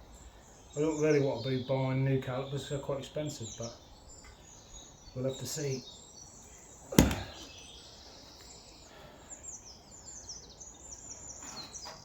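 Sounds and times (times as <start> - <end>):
small birds chirping: 0.0 - 12.0
sharp knock on axle: 7.0 - 7.4.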